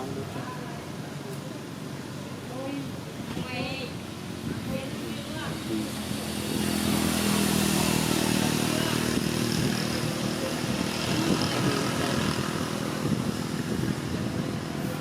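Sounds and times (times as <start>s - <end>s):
vehicle engine running: 3.5s - 15.0s.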